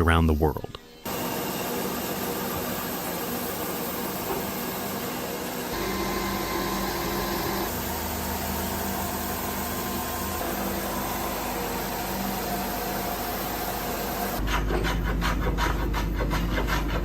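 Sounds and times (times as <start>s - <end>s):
woodworking machinery running: 1.1s - 14.4s.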